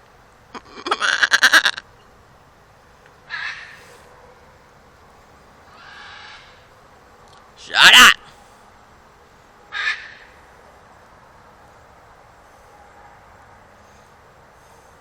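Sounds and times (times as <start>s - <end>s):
animal bleating: 0.6s - 1.8s, 5.7s - 6.7s.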